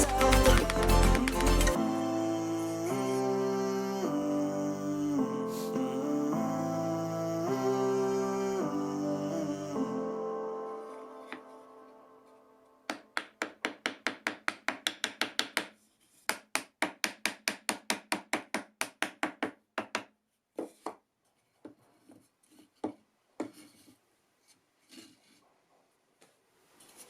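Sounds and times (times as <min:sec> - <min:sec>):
scrapes and knocks: 0:20.6 - 0:25.5.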